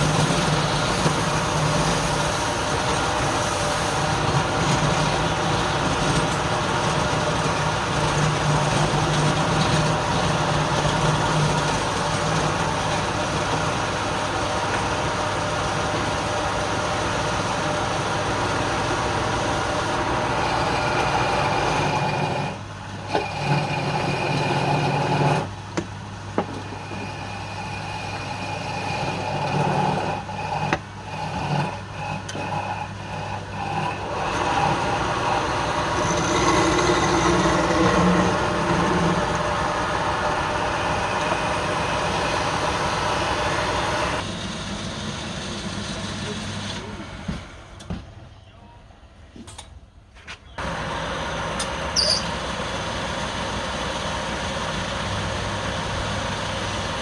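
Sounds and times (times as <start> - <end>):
lathe motor hum: 0.0 - 47.7, 50.6 - 57.0
workshop noise: 0.0 - 48.4, 49.3 - 57.0.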